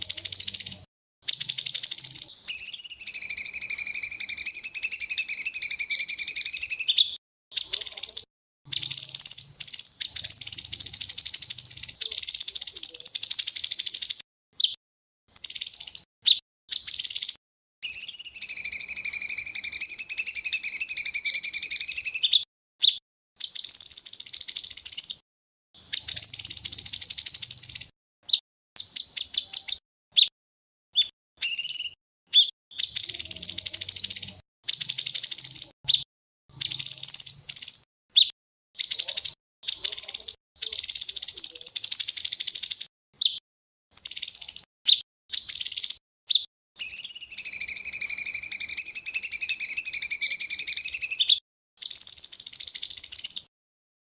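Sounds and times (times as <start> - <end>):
songbird chattering trills: 0.0 - 14.7, 31.6 - 36.0, 36.6 - 37.8, 38.8 - 42.7
long wavering bird whistle: 0.0 - 14.8, 15.4 - 25.2, 25.9 - 30.3, 31.0 - 36.0, 36.6 - 43.4, 44.0 - 53.5.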